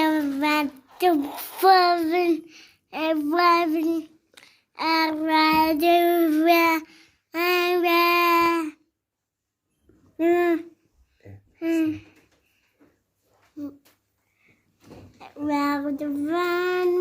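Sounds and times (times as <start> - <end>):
child singing: 15.3 - 17.0.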